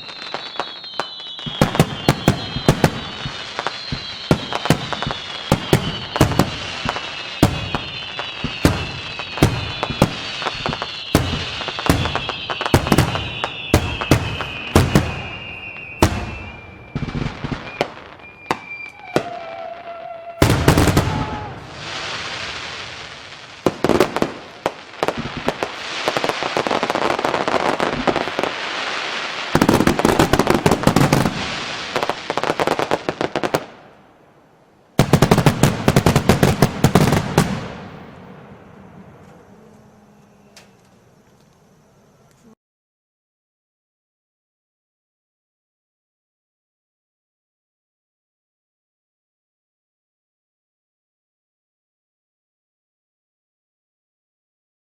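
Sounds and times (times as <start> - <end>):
whistling rockets: 0.0 - 33.8, 35.0 - 39.6
fireworks bangs and crackling: 0.0 - 34.0, 35.0 - 39.5.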